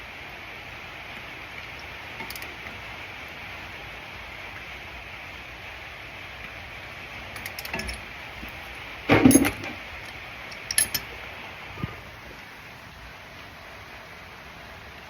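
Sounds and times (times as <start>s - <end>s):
steady background hiss: 0.0s - 15.0s
metal parts clinking: 2.2s - 2.5s, 7.4s - 11.1s.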